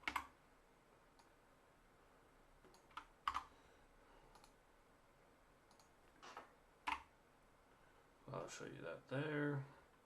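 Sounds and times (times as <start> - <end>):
computer keyboard clicks: 0.0 - 0.3, 2.6 - 3.5, 6.9 - 7.1.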